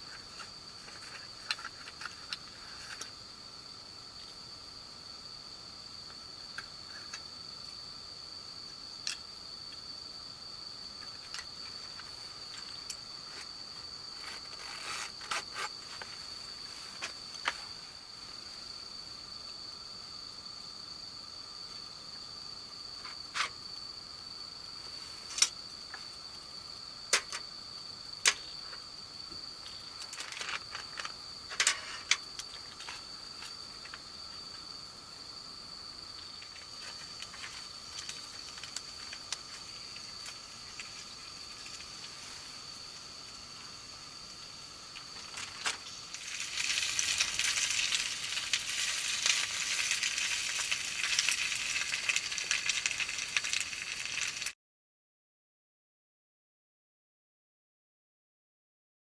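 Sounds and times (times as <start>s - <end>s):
insects chirring: 0.0s - 54.5s.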